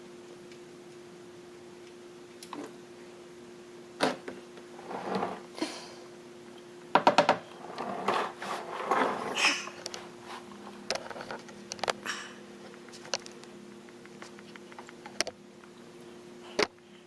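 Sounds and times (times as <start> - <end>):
faint steady hum: 0.0 - 17.0
hand tools knocking and rattling: 7.0 - 7.4.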